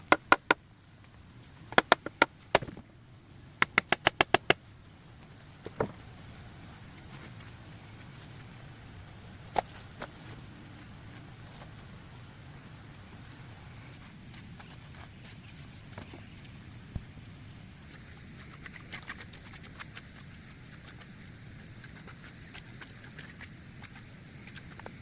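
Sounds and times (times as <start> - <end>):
sharp hard knocks: 0.0 - 0.6, 1.8 - 2.8, 3.6 - 4.6.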